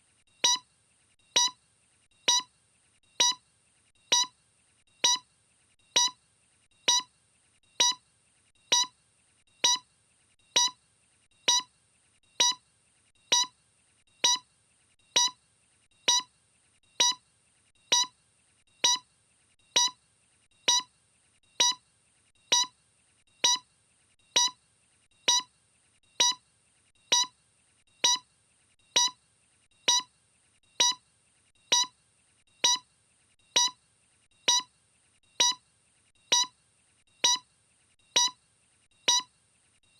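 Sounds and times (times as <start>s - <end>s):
electronic ticks: 0.4s - 0.7s, 1.3s - 1.6s, 2.2s - 2.5s, 3.1s - 3.4s, 4.0s - 4.4s, 5.0s - 5.3s, 5.9s - 6.2s, 6.8s - 7.1s, 7.7s - 8.0s, 8.6s - 9.0s, 9.6s - 9.9s, 10.5s - 10.8s, 11.4s - 11.7s, 12.3s - 12.6s, 13.2s - 13.6s, 14.2s - 14.5s, 15.1s - 15.4s, 16.0s - 16.3s, 16.9s - 17.2s, 17.8s - 18.2s, 18.8s - 19.1s, 19.7s - 20.0s, 20.6s - 20.9s, 21.5s - 21.8s, 22.4s - 22.8s, 23.4s - 23.7s, 24.3s - 24.6s, 25.2s - 25.5s, 26.1s - 26.4s, 27.0s - 27.4s, 28.0s - 28.3s, 28.9s - 29.2s, 29.8s - 31.0s, 31.6s - 32.0s, 32.6s - 32.9s, 33.5s - 33.8s, 34.4s - 35.6s, 36.2s - 36.6s, 37.2s - 37.5s, 38.1s - 38.4s, 39.0s - 39.3s.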